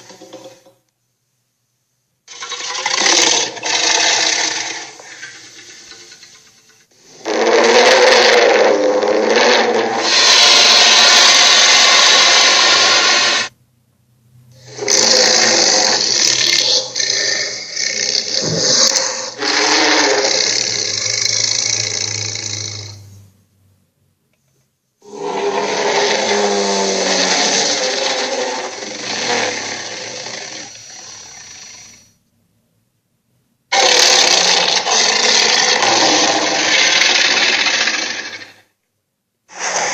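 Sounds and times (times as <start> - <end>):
cartoon sea monster roaring: 7.0 - 13.5, 14.6 - 23.0, 25.0 - 32.1, 33.7 - 38.6, 39.5 - 39.9.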